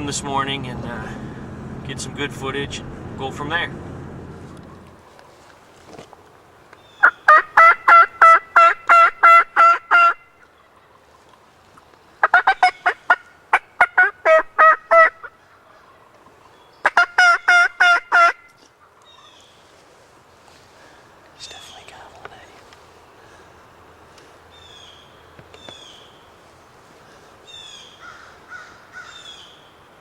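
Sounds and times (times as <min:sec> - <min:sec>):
turkey yelps: 0:07.0 - 0:10.9, 0:12.2 - 0:16.1, 0:16.8 - 0:19.3.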